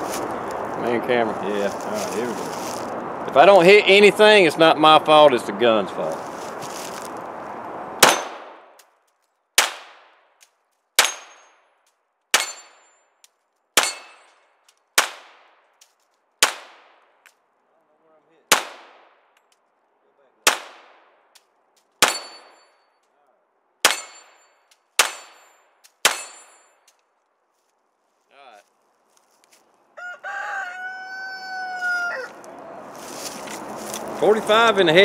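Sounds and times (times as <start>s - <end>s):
pistol shots: 8.0s - 8.8s, 9.6s - 10.2s, 15.0s - 15.6s, 16.4s - 17.1s, 18.5s - 19.3s, 20.4s - 21.2s, 22.0s - 22.6s, 23.8s - 24.4s, 25.0s - 26.5s.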